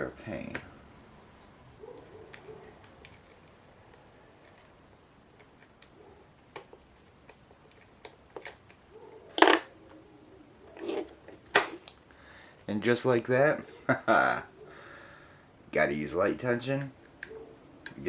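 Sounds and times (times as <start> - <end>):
lock pick ticking and scraping: 1.2 - 9.7.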